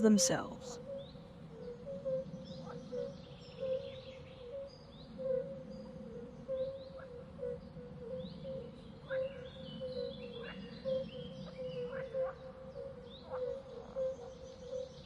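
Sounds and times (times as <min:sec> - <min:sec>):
birds chirping: 0:00.0 - 0:05.9.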